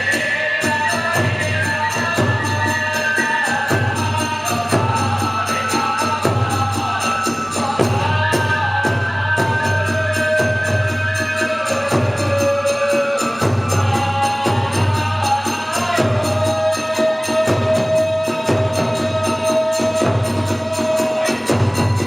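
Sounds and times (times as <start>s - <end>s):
drum beating steady pulse: 0.0s - 22.0s
hand cymbals clashing: 0.0s - 22.0s.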